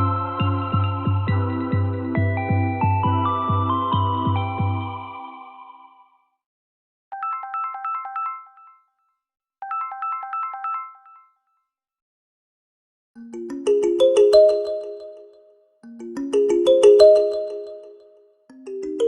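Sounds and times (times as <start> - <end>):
lower ringtone melody: 0.0 - 6.0, 7.2 - 8.9, 9.6 - 11.4, 13.2 - 19.0
high-pitched ringtone phrase: 13.8 - 15.3.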